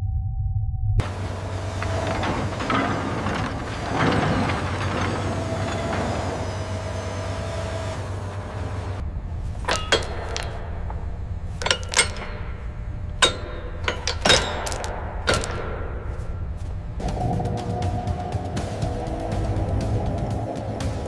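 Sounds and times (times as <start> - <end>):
steady low rumble: 0.0 - 5.1, 8.4 - 21.0
sharp metallic clanks: 1.0 - 7.6, 8.8 - 17.2.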